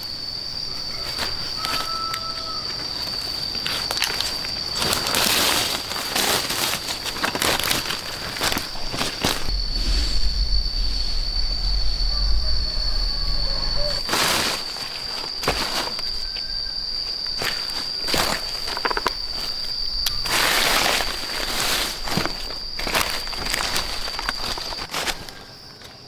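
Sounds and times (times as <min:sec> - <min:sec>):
insects droning: 0:00.0 - 0:26.0
footsteps through undergrowth: 0:01.2 - 0:26.0
low rumble: 0:09.4 - 0:14.1.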